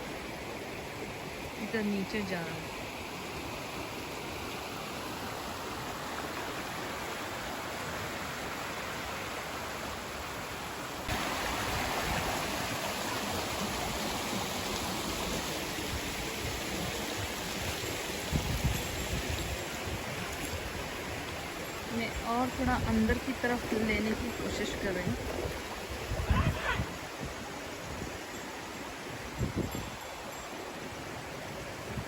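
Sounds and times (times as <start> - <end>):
water rushing down a stream: 0.0 - 32.0.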